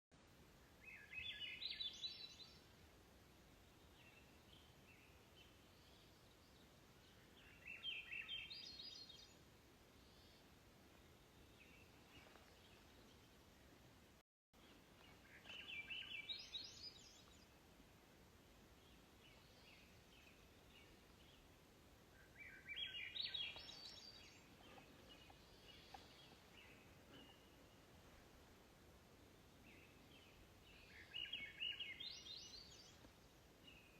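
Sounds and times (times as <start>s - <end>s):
faint hiss: 0.2s - 33.9s
songbird singing: 0.4s - 33.9s
bird chirps: 14.6s - 17.5s, 22.2s - 27.9s, 29.6s - 33.0s.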